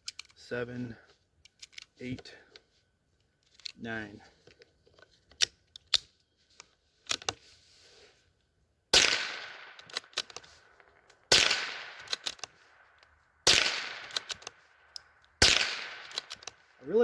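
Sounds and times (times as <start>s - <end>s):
rifle shots with echo: 8.9s - 17.0s.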